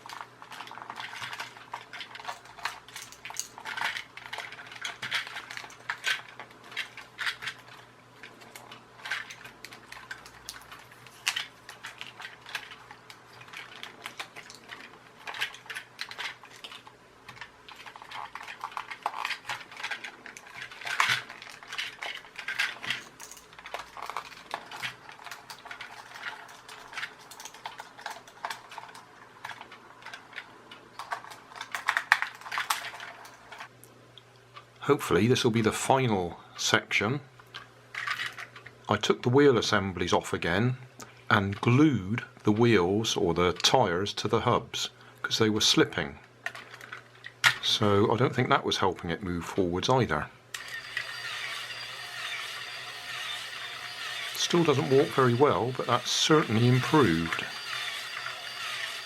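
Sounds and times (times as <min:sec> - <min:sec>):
small hard parts clattering: 0:00.0 - 0:33.7, 0:37.4 - 0:38.8, 0:46.4 - 0:47.8, 0:50.6 - 0:59.0.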